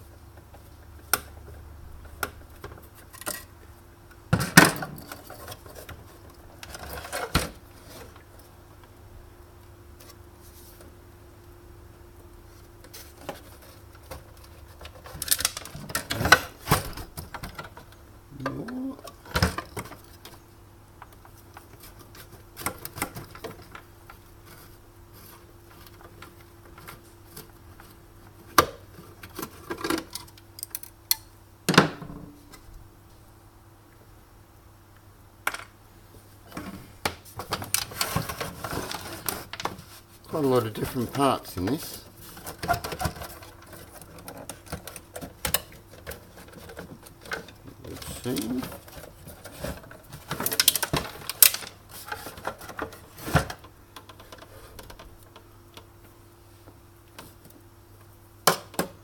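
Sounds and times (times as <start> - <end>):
faint steady hum: 0.0 - 59.0
plastic and metal parts clattering: 4.3 - 8.3, 12.8 - 20.4, 21.0 - 31.0, 37.4 - 55.9.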